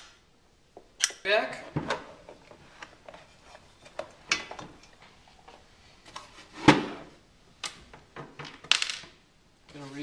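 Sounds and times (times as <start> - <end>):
parts clicking and scraping: 1.8 - 6.7.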